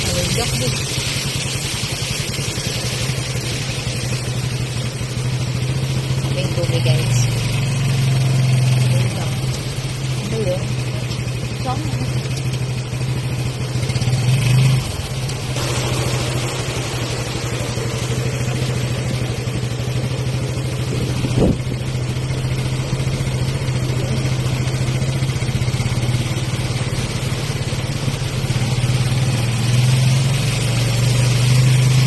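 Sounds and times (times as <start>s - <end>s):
steady hiss: 0.0s - 6.3s
vehicle engine running: 0.0s - 32.0s.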